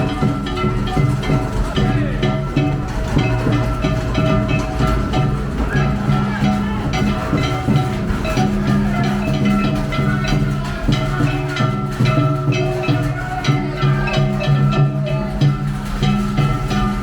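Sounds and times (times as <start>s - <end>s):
pitched festival melody: 0.0s - 17.0s
regular drum strokes: 0.0s - 17.0s.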